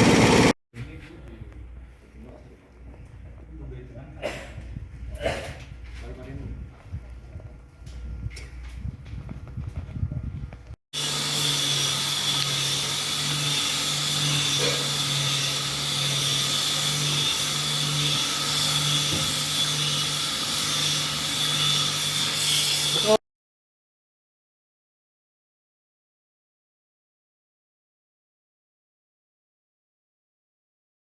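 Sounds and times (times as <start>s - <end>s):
grating machine whining: 0.0s - 0.6s, 11.0s - 23.2s.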